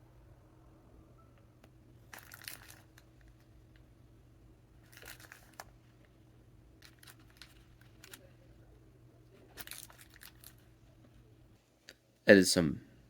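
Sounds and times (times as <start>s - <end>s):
packaging crinkling: 2.1s - 3.1s, 4.8s - 5.7s, 6.8s - 8.2s, 9.5s - 10.6s.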